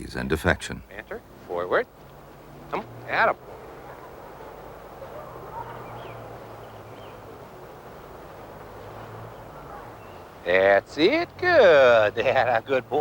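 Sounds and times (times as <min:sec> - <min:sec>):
low street hum: 0:00.0 - 0:13.0.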